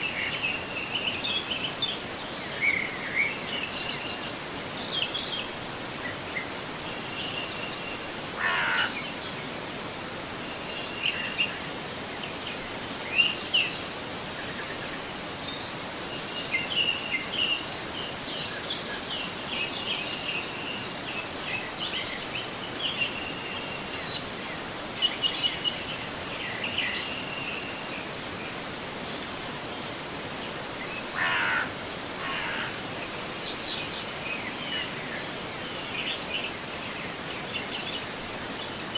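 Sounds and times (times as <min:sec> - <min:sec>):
river flowing: 0:00.0 - 0:38.9
songbirds chirping: 0:00.0 - 0:38.9
harsh bird calls: 0:08.4 - 0:09.0, 0:31.0 - 0:32.9.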